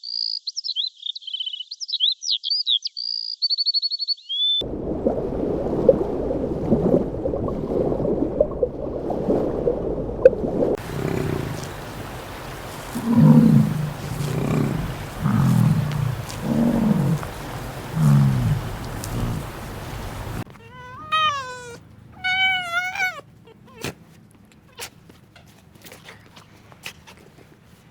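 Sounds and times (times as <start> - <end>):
crackly noise with clicks: 10.2 - 21.2
cat yowling: 12.6 - 24.0.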